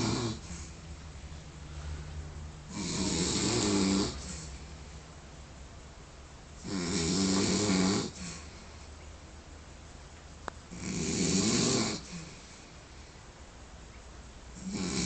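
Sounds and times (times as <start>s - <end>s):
man snoring: 0.0s - 0.8s, 2.7s - 4.6s, 6.6s - 8.5s, 10.7s - 12.4s, 14.6s - 15.0s.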